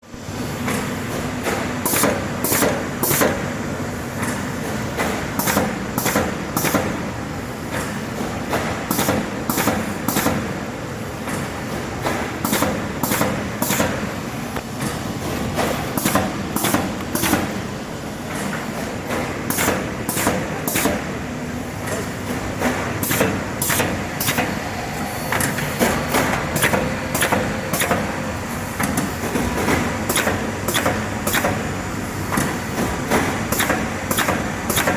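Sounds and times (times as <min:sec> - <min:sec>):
sharp mechanical clacks: 0:14.6 - 0:17.6, 0:18.3 - 0:21.1, 0:21.8 - 0:24.6, 0:25.3 - 0:28.2, 0:28.8 - 0:31.7, 0:32.3 - 0:34.9
machine humming: 0:22.8 - 0:34.9.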